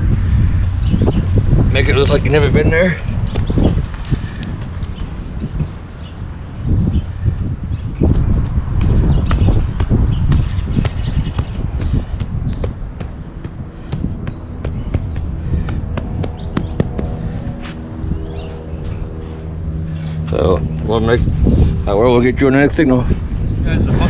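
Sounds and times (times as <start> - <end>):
wind buffeting microphone: 0.0 - 24.0
soil scraping and tapping: 8.8 - 17.8.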